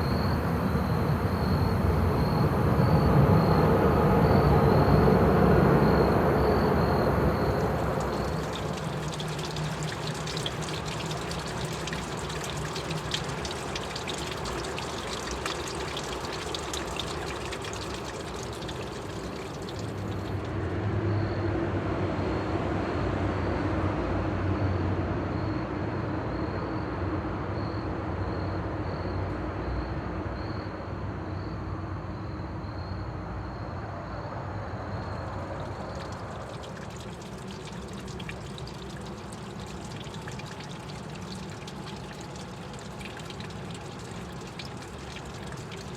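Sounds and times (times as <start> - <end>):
insects chirring: 0.0 - 20.6, 33.5 - 45.9
water running in a creek: 3.4 - 20.7, 34.8 - 45.9.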